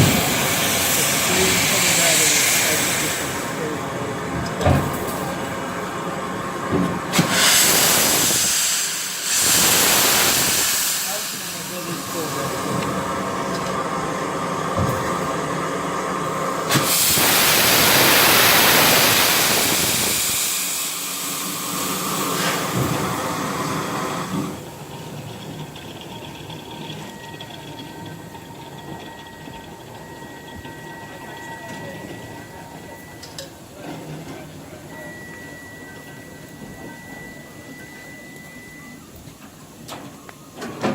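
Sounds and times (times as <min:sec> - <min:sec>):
steam locomotive hissing steam: 0:00.0 - 0:24.9.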